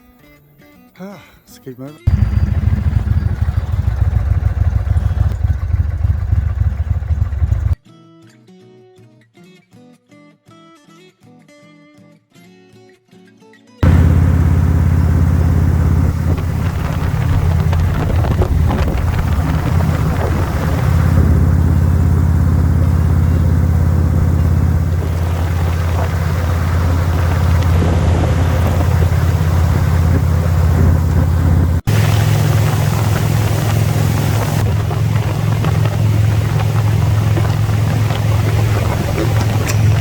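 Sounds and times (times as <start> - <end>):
motorcycle engine droning: 2.1 - 7.8, 13.8 - 40.0
wind on microphone: 13.8 - 40.0.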